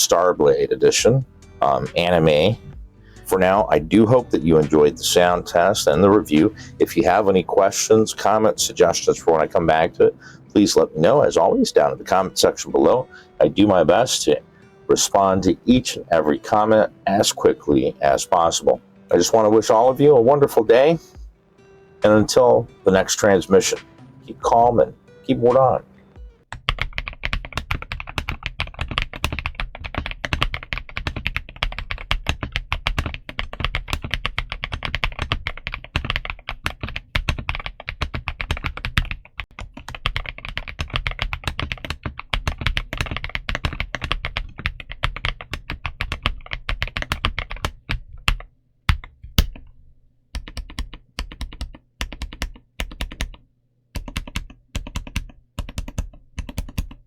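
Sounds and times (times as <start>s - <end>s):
mechanical keyboard typing: 26.5s - 49.7s, 50.4s - 53.4s, 54.0s - 57.0s.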